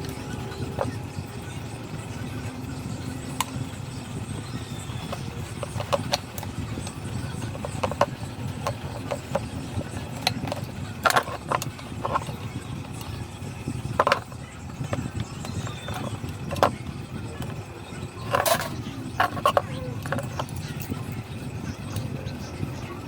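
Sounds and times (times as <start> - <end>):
tools clicking and knocking: 4.8 - 13.2, 13.9 - 16.8, 18.2 - 20.9.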